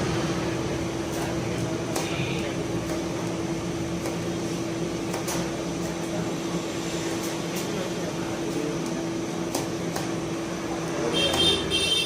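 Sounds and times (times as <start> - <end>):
arc welding hiss and crackle: 0.0 - 12.0
steady hum: 0.0 - 12.0
welding pops: 1.0 - 4.4, 11.2 - 11.7.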